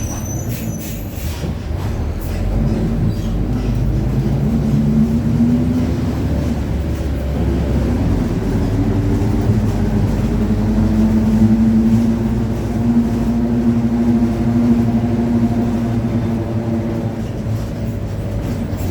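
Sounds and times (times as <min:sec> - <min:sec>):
bus diesel engine running: 0:00.0 - 0:18.9
droning growling differential: 0:01.6 - 0:18.9.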